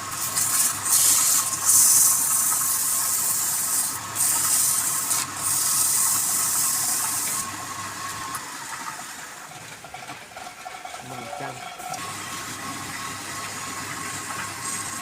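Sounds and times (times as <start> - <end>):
wood lathe whine: 0.0 - 15.0
hiss of tool on spinning wood: 0.2 - 7.5.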